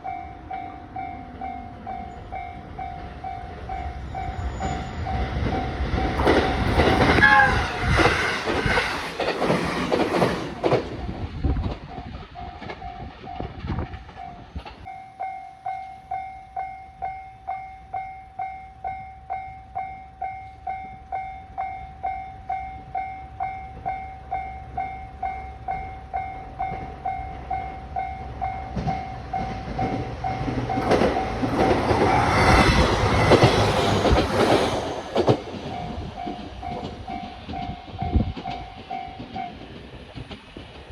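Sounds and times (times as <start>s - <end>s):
level crossing warning bell: 0.0s - 6.2s, 11.9s - 32.0s, 35.6s - 39.7s
train passing: 0.0s - 40.9s.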